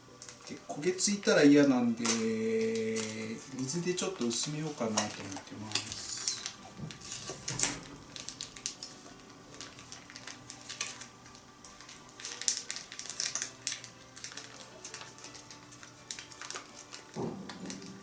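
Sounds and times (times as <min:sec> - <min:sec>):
utensils clattering against iron pot: 0:02.0 - 0:08.0.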